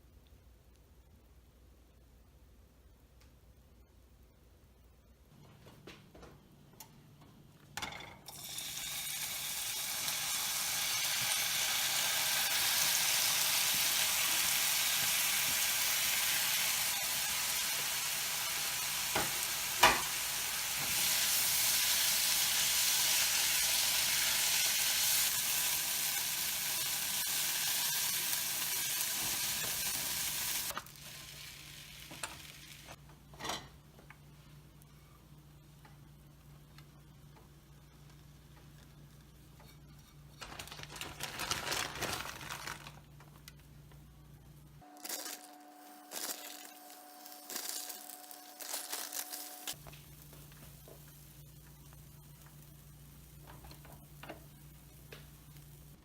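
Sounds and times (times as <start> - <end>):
food sizzling in hot oil: 8.3 - 33.0, 45.0 - 56.0.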